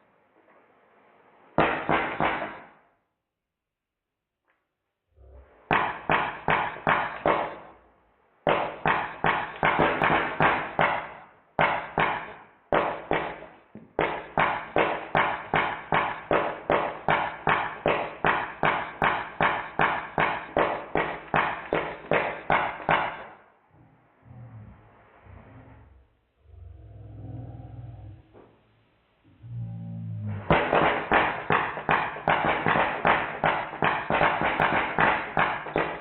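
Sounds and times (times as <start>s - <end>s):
bb gun shots: 1.6s - 2.8s, 5.7s - 7.8s, 8.4s - 23.4s, 30.5s - 36.0s.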